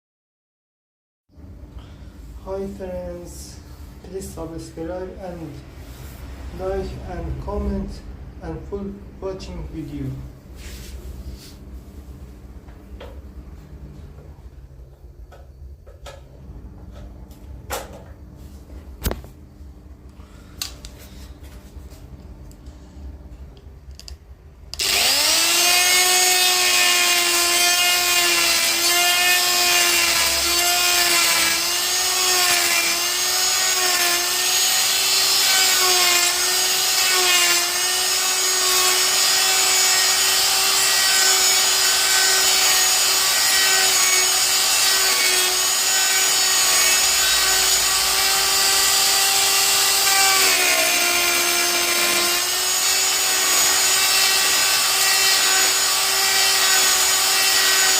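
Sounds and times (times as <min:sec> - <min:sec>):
die grinder whining: 0:24.7 - 0:57.9.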